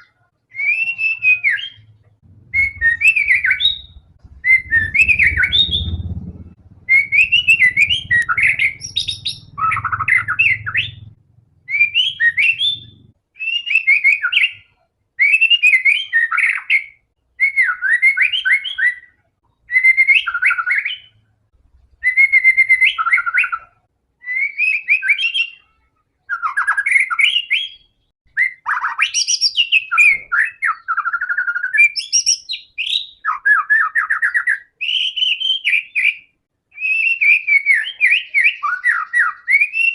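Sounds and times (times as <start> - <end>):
songbird whistling: 0.0 - 21.2, 22.0 - 25.7, 26.3 - 39.9.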